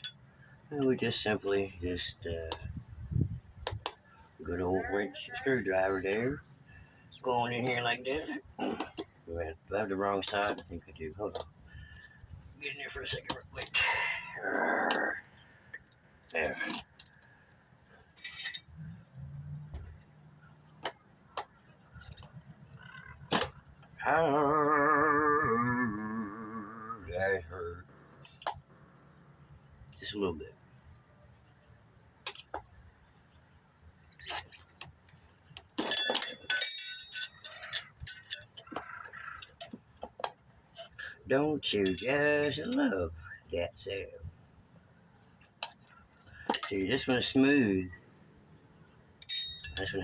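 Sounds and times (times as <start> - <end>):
metal tools clinking: 18.0 - 20.0, 35.6 - 39.8, 41.6 - 42.8, 45.4 - 47.4, 49.2 - 50.0
man groaning: 24.0 - 27.8
handling noise: 34.1 - 41.0.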